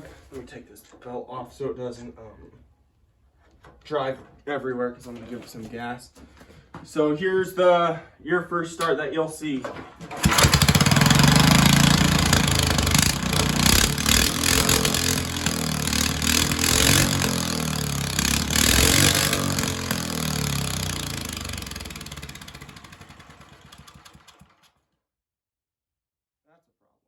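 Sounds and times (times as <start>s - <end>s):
small engine revving: 10.2s - 24.6s.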